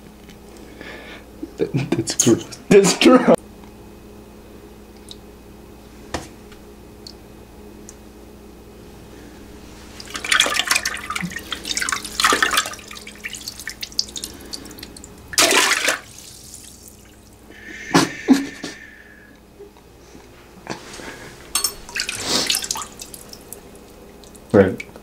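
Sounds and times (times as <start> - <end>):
hissing water flow: 9.8 - 17.6, 21.9 - 24.5
water splashing in toilet bowl: 10.0 - 17.4, 21.9 - 24.5.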